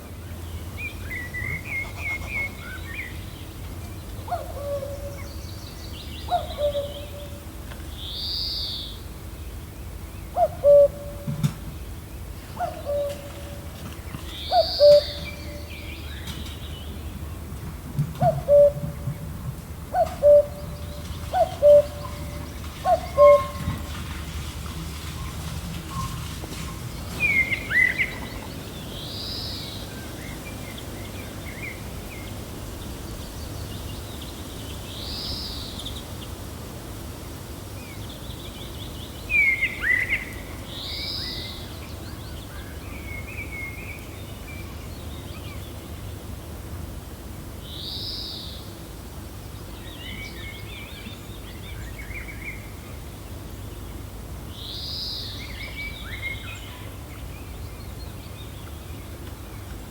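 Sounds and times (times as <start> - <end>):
bird repeating arched call: 14.5 - 15.6, 20.0 - 23.7
wind rumbling: 16.9 - 37.0.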